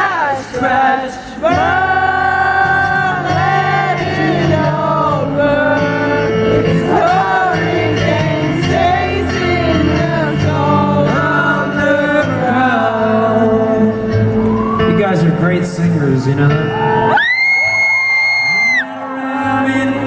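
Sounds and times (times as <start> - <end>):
person singing: 0.0 - 14.5
acoustic guitar chords: 0.0 - 17.1.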